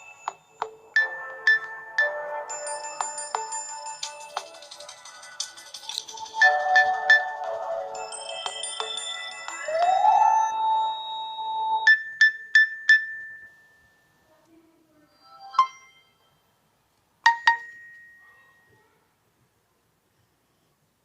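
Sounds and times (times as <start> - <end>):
phone alert tones: 6.4 - 13.4, 17.3 - 17.9.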